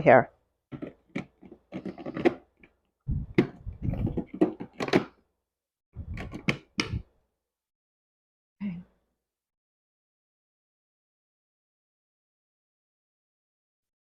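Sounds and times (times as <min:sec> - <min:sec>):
handling clicks and knocks: 0:00.7 - 0:02.7, 0:03.4 - 0:05.2.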